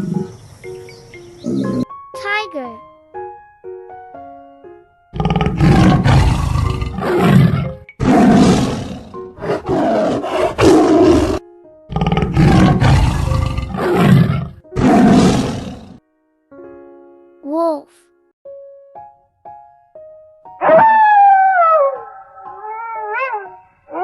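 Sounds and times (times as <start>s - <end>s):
tiger roaring and growling: 0.0s - 0.4s, 5.2s - 16.0s.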